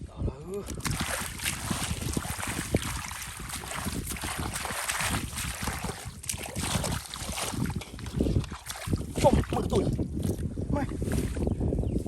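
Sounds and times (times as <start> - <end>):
wind buffeting microphone: 0.0 - 12.0
water splashing and sloshing: 0.6 - 11.5.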